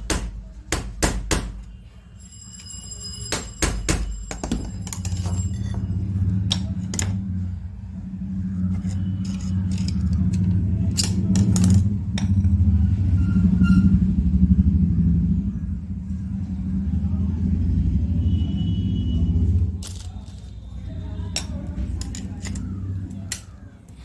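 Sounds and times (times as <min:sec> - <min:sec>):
hammer striking metal: 0:00.0 - 0:01.8, 0:03.3 - 0:07.2
metallic ringing: 0:01.4 - 0:07.5
low rumbling hum: 0:03.3 - 0:24.0.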